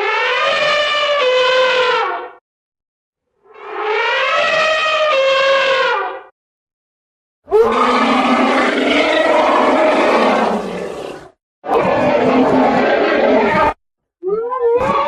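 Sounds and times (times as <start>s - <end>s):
elephant roar: 7.5s - 13.8s
elephant trumpeting: 7.5s - 13.8s.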